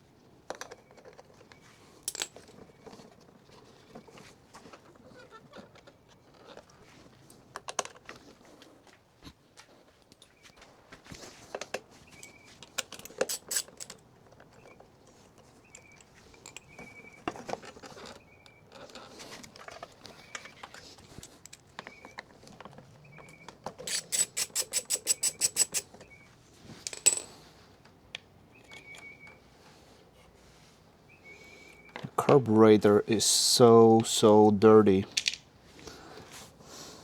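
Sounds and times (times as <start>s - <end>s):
metal parts clinking: 12.8s - 14.7s, 23.7s - 26.1s, 26.8s - 27.4s, 35.1s - 35.4s.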